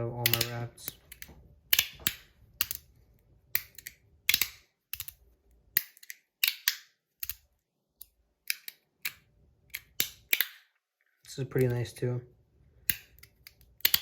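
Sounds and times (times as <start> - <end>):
magnets snapping with click: 0.2 - 2.9, 3.5 - 10.8, 12.8 - 14.0.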